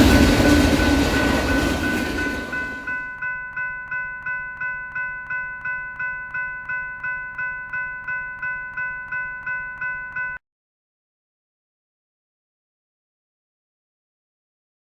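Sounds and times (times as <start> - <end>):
railroad crossing bell ringing: 0.0 - 10.4.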